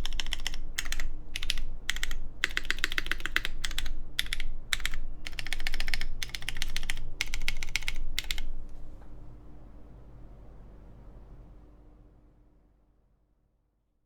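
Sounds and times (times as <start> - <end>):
mechanical keyboard typing: 0.0 - 8.5.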